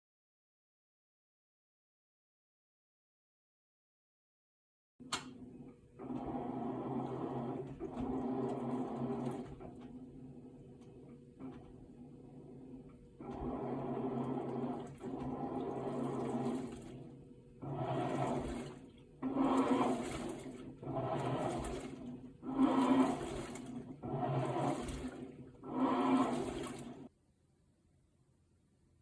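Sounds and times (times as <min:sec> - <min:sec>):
washing machine water sloshing: 0:05.2 - 0:27.1.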